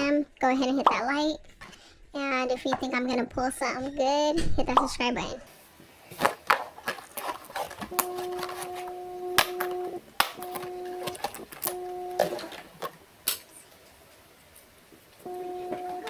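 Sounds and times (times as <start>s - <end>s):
camera zoom motor whining: 7.9s - 12.5s.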